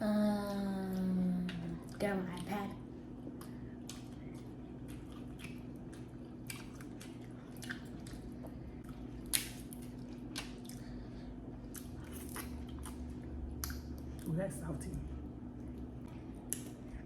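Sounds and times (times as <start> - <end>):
steady low hum: 0.0 - 17.0
wet chewing and lip-smacking: 3.2 - 14.4, 15.6 - 17.0.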